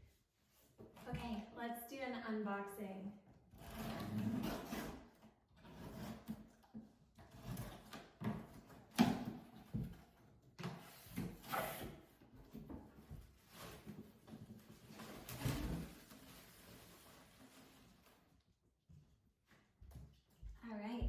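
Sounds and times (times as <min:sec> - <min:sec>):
objects rustling on a surface: 0:13.1 - 0:18.4.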